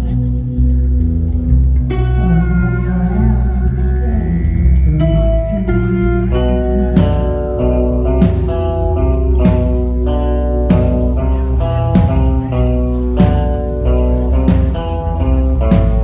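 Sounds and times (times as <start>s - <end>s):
guitar notes: 0.0s - 16.0s
heavy bass: 0.0s - 16.0s
drum hits: 7.0s - 7.4s, 8.2s - 10.0s, 10.7s - 12.6s, 13.2s - 13.8s, 14.4s - 16.0s.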